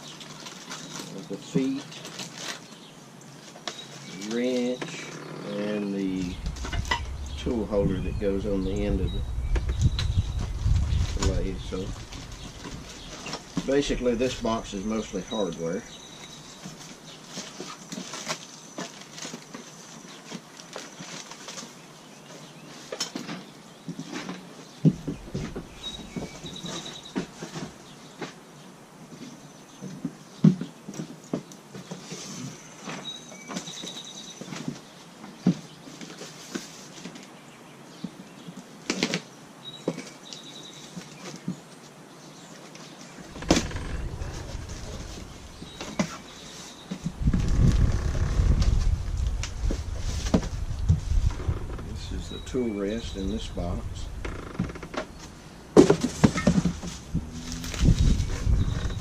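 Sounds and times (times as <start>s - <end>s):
low rumble of handling: 5.5s - 16.6s, 24.9s - 27.8s, 43.0s - 55.4s, 56.1s - 59.0s.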